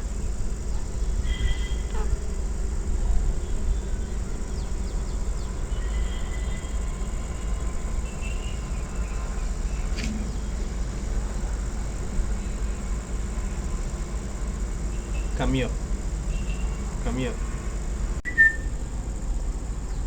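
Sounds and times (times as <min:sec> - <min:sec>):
rising whistle: 0:18.2 - 0:18.8.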